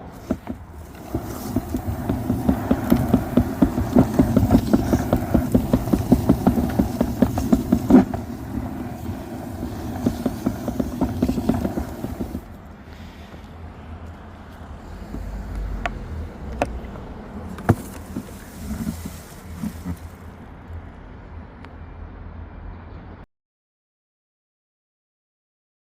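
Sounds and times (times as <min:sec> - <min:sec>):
leaf sweeper rattling: 0:00.0 - 0:12.6, 0:17.4 - 0:20.4.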